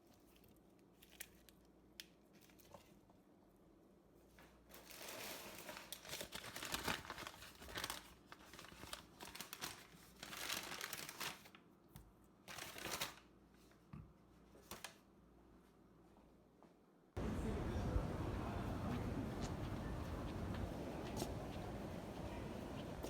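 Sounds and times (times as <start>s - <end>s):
crinkling and rustling: 0.0s - 3.2s, 4.3s - 15.0s.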